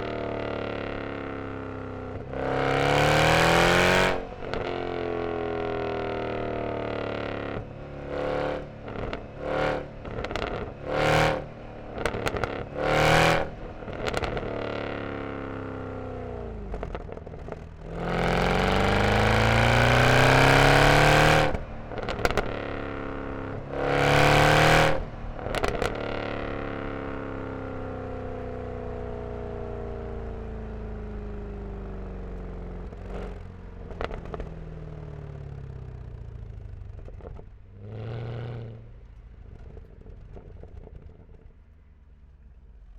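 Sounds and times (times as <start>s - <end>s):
car engine revving: 2.1s - 28.6s
exhaust crackles: 8.8s - 20.3s, 21.4s - 28.4s.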